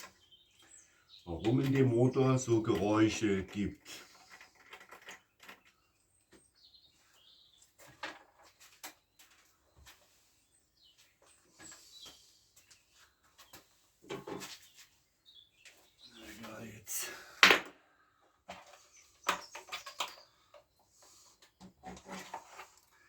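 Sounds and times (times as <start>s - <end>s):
faint bird chirps: 3.9s - 16.8s.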